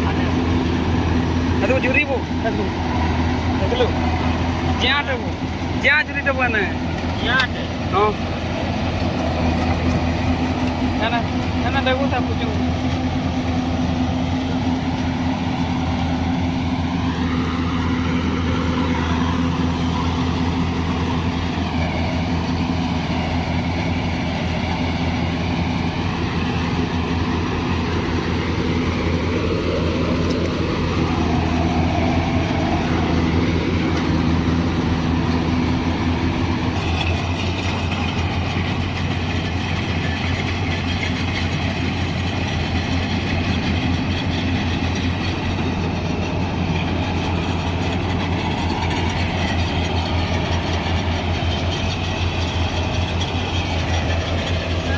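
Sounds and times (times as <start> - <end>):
combine harvester diesel engine: 0.0 - 54.9.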